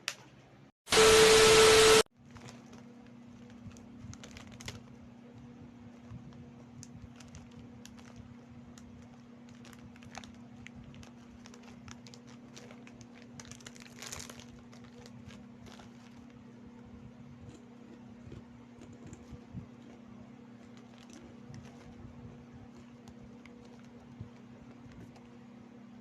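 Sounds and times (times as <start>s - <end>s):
steady low hum: 2.2s - 26.0s
crunchy snack being eaten: 17.4s - 22.0s.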